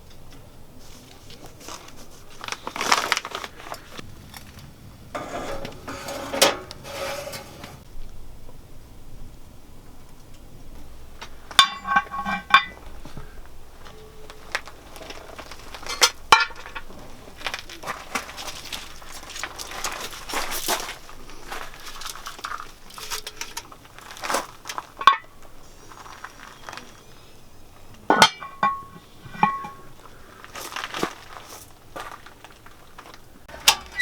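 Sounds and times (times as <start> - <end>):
cookware clinking and knocking: 11.6 - 12.8, 28.1 - 29.9.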